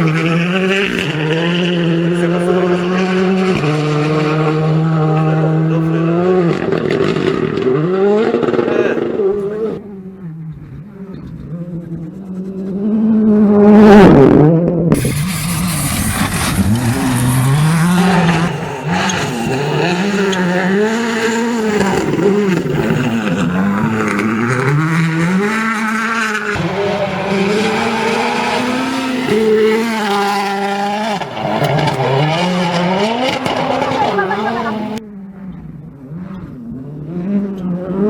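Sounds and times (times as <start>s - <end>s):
rally car engine revving: 0.0s - 38.0s.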